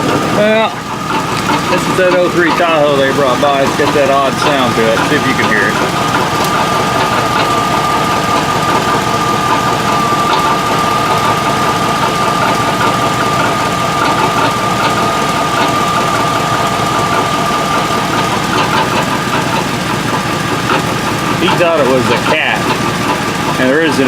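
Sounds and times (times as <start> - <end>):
engine idling: 0.0 - 24.0
rapid ticking: 0.0 - 24.0
steady high tone: 1.7 - 19.8.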